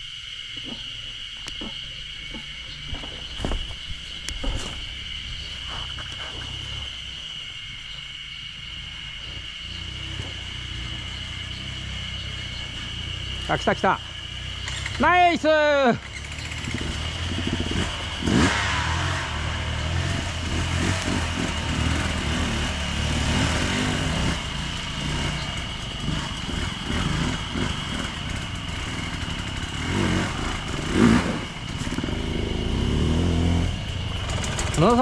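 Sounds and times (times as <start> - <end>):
dirt bike engine revving: 9.6 - 35.0.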